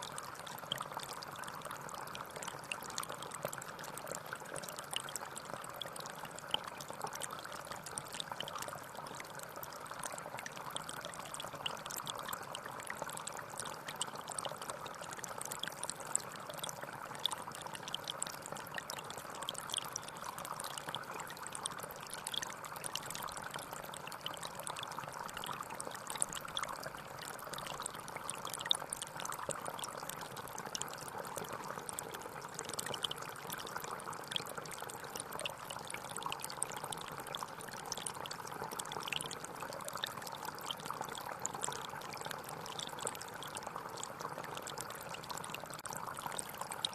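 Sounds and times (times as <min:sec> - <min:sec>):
small splashes and drips: 0:00.0 - 0:46.9.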